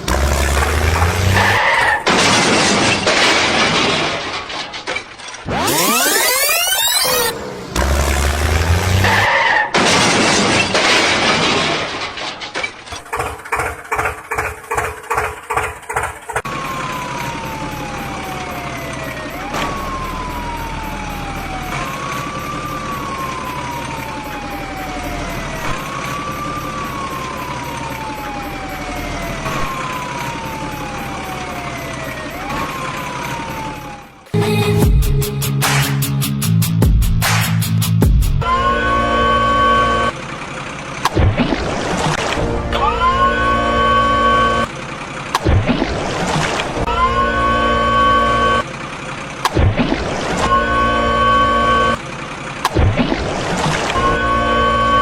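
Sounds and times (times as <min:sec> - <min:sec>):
vehicle rumble: 0:00.0 - 0:03.3, 0:04.0 - 0:35.2, 0:38.3 - 0:55.0
crashing noise: 0:00.0 - 0:06.7, 0:07.6 - 0:16.5
siren wailing: 0:05.5 - 0:09.7, 0:16.4 - 0:34.4, 0:38.4 - 0:40.2, 0:42.7 - 0:44.8, 0:46.6 - 0:48.7, 0:50.2 - 0:52.1, 0:53.8 - 0:55.0.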